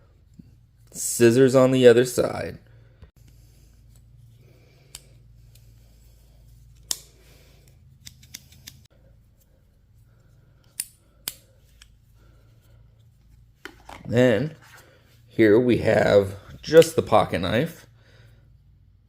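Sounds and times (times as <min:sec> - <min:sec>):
scissors metal clicks: 0:06.8 - 0:08.8, 0:10.6 - 0:11.9.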